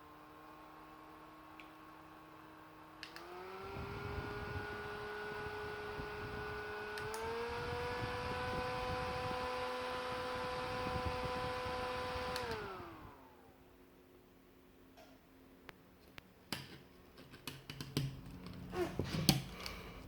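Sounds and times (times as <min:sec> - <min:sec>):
electric fan motor whine: 0:00.0 - 0:14.1
fan switch click: 0:12.3 - 0:12.6.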